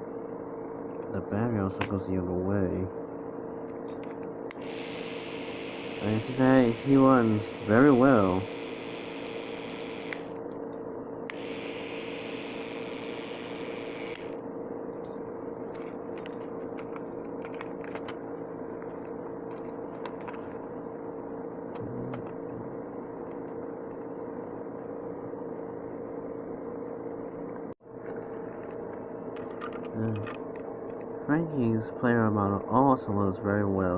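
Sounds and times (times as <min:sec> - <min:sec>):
toy train motor humming: 0:04.5 - 0:10.4, 0:11.3 - 0:14.4.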